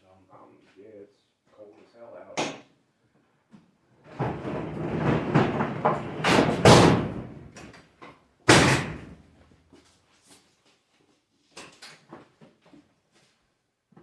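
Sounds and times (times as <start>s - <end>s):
door slamming: 4.1s - 7.6s, 8.5s - 9.2s
door rattling and scraping: 4.1s - 7.8s, 8.5s - 9.2s.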